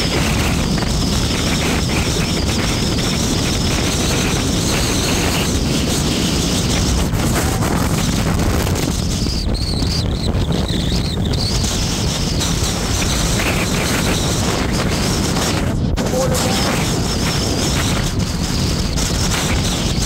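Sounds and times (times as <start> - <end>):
vehicle road noise rumble: 0.0 - 20.0
wind buffeting microphone: 0.0 - 20.0.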